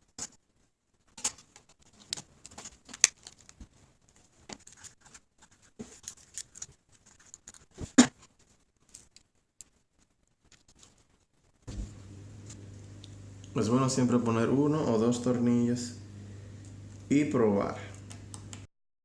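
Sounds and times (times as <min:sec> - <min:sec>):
hands handling small parts: 0:01.1 - 0:11.3.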